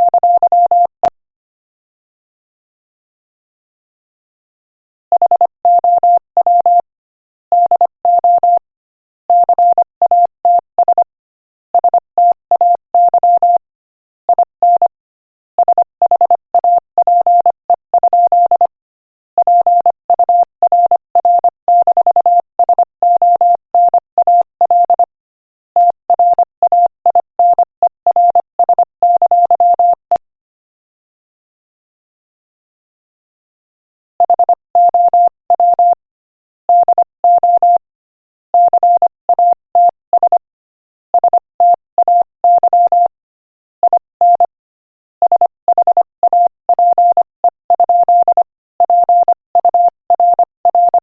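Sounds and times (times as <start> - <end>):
morse code beeps: 0.0 - 0.9, 5.2 - 6.8, 7.6 - 8.6, 9.3 - 11.0, 11.8 - 13.6, 14.4 - 14.9, 15.6 - 18.8, 19.4 - 25.1, 25.8 - 30.2, 34.2 - 36.0, 36.7 - 37.8, 38.6 - 40.5, 41.1 - 43.2, 43.8 - 44.6, 45.2 - 51.0.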